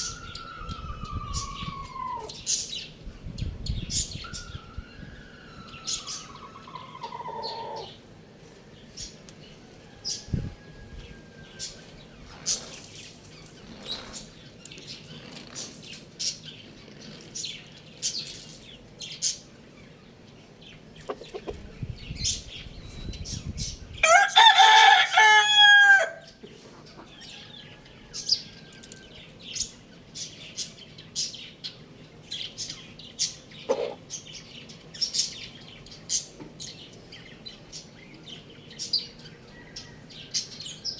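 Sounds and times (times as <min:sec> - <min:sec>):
rooster crowing: 0:00.0 - 0:02.4, 0:04.3 - 0:07.9, 0:09.7 - 0:12.0, 0:24.0 - 0:26.4, 0:39.4 - 0:40.9
small birds chirping: 0:00.0 - 0:25.3, 0:26.2 - 0:40.9.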